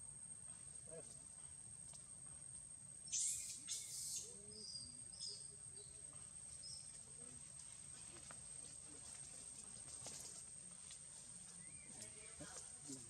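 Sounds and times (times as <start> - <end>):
high insect buzz: 1.0 - 7.0
short bird chirps: 3.1 - 5.4.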